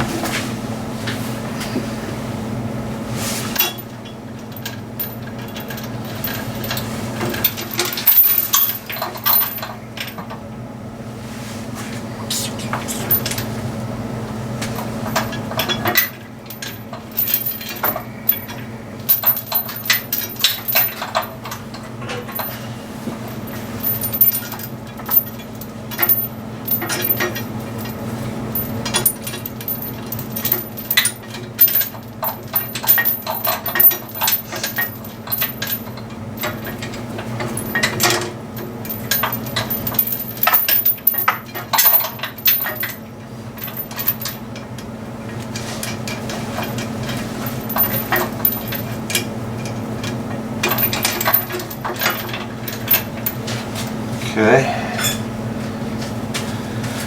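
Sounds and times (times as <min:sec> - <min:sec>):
steady low hum: 0:00.0 - 0:57.0
metal parts clinking: 0:04.6 - 0:10.3, 0:15.0 - 0:22.6, 0:28.6 - 0:43.0, 0:43.6 - 0:44.4, 0:46.1 - 0:49.2, 0:50.6 - 0:53.4.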